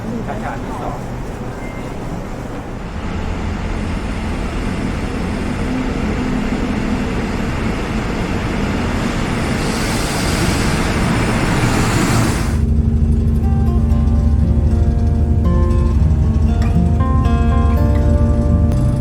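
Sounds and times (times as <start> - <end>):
train rumbling: 0.0 - 19.0
hiss: 3.4 - 12.6.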